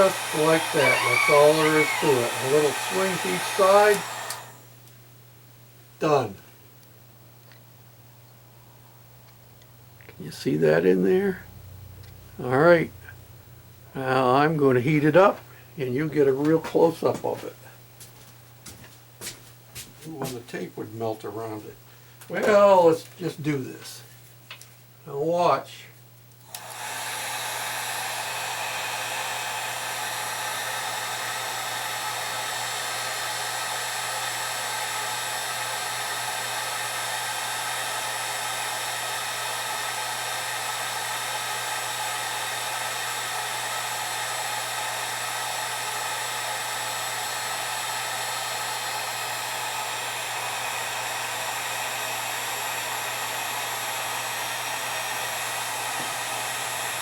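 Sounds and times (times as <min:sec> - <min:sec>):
heat gun blowing with hum: 0:00.0 - 0:04.7, 0:26.4 - 0:57.0.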